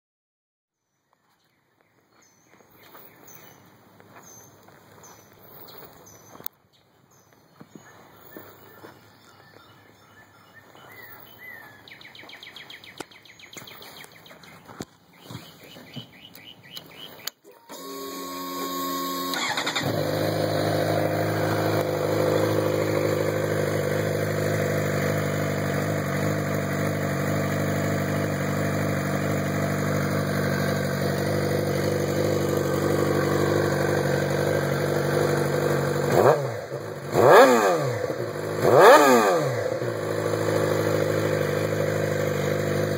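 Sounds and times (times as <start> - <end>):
motorcycle throttle blips: 15.4 - 42.9
motorcycle starter cranking: 17.4 - 23.4
motorcycle engine idling: 18.2 - 42.9.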